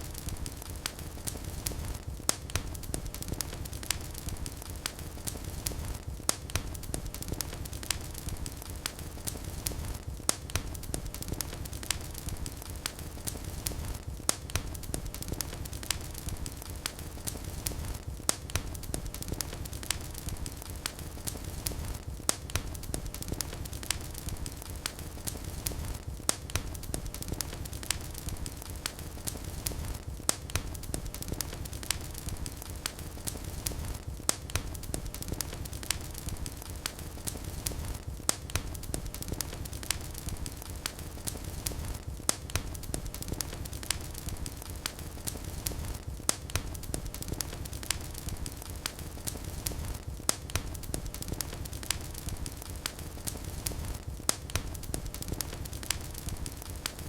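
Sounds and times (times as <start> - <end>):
fire crackling and popping: 0.0 - 57.0
low rumble of flames: 0.0 - 57.0.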